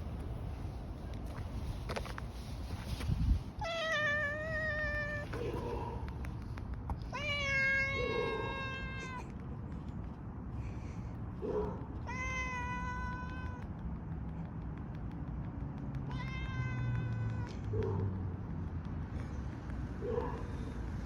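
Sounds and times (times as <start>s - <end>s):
cat meowing: 3.6s - 5.9s, 7.1s - 9.3s, 12.0s - 13.7s, 16.0s - 17.7s.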